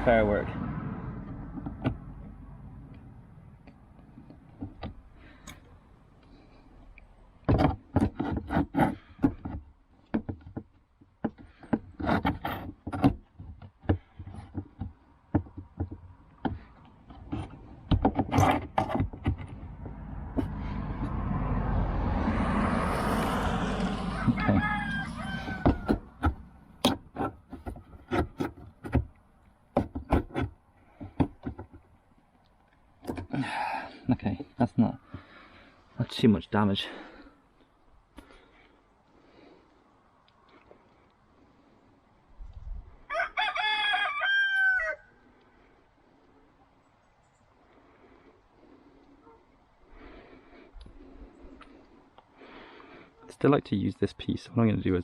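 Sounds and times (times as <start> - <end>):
wood knocking and clattering: 7.4 - 20.6, 25.4 - 32.0
scraping: 7.4 - 21.2.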